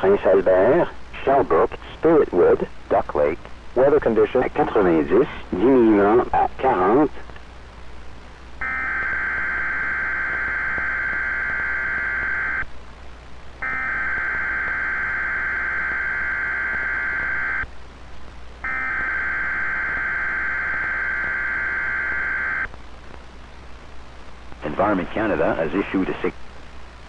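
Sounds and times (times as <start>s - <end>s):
buzzy screeching data tones: 8.6s - 12.7s, 13.6s - 17.7s, 18.6s - 22.7s.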